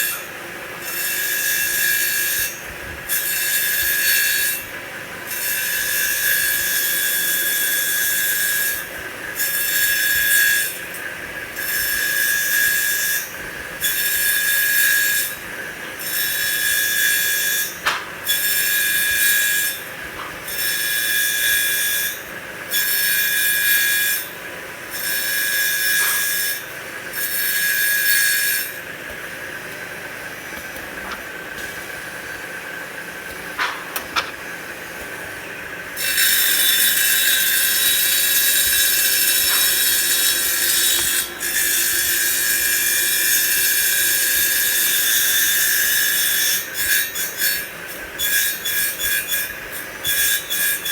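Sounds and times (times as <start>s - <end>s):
wood lathe screeching cut: 36.0s - 43.8s.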